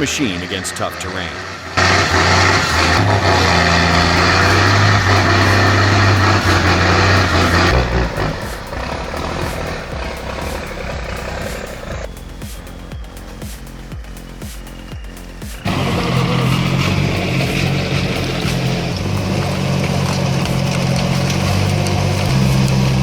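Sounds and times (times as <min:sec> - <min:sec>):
truck diesel engine under load: 0:00.0 - 0:23.0.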